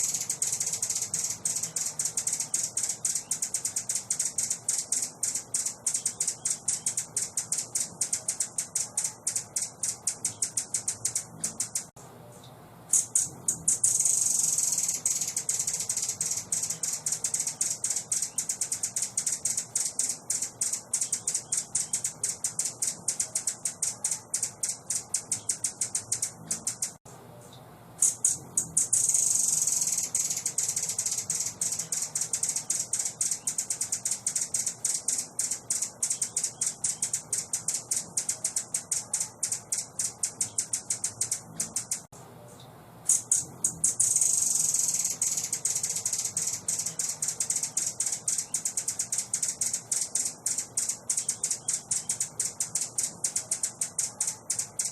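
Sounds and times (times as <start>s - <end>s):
songbird chattering call: 0.0s - 11.9s, 12.9s - 27.0s, 28.0s - 42.1s, 43.1s - 54.9s.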